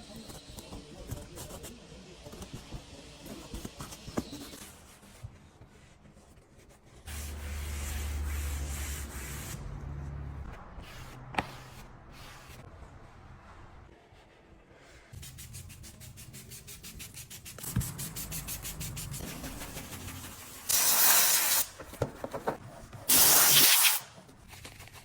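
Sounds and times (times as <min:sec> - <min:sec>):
rubbing and scrubbing: 0:04.2 - 0:09.6, 0:14.2 - 0:25.0.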